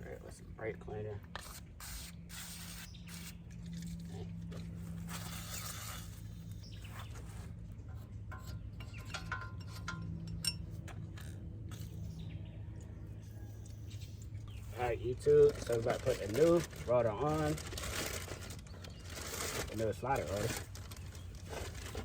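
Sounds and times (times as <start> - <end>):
metal clinks and scrapes: 2.4 - 12.1.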